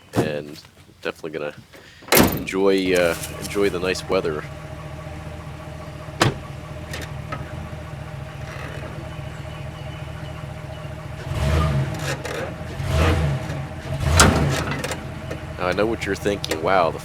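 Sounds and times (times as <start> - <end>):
truck engine idling: 0.0 - 17.0.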